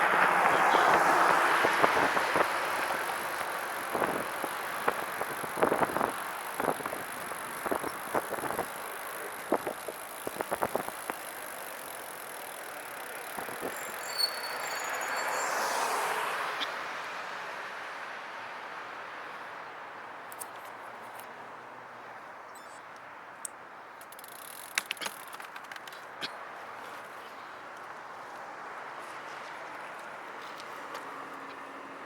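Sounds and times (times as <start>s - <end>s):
trike rolling: 0.1s - 15.0s, 23.4s - 28.0s.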